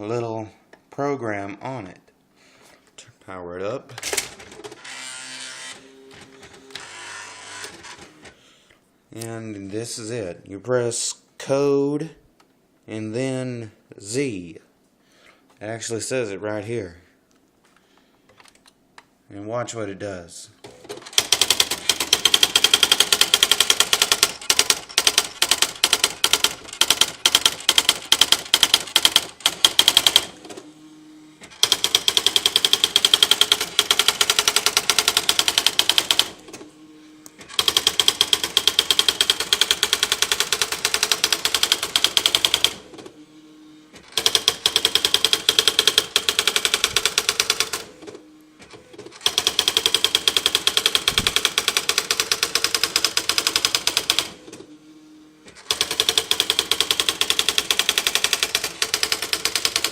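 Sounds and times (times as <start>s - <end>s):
electronic typewriter printing: 3.9s - 8.4s, 20.6s - 54.8s, 55.4s - 59.9s.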